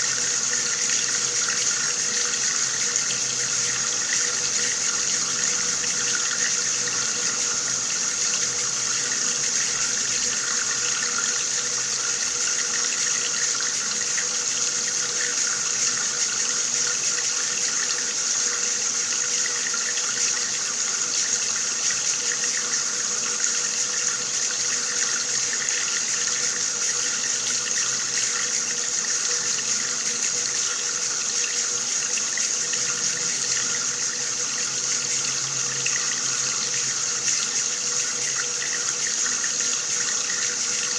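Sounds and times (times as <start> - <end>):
water running from a tap: 0.0 - 40.9.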